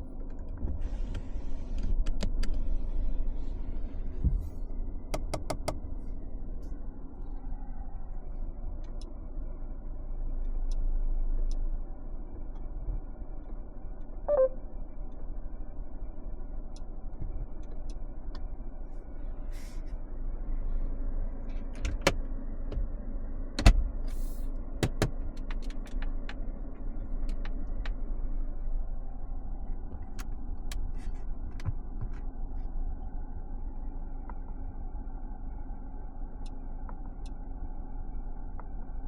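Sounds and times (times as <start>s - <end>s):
car rumbling on road: 0.0s - 39.0s
sharp clicks and knocks: 5.2s - 5.8s, 24.8s - 26.4s.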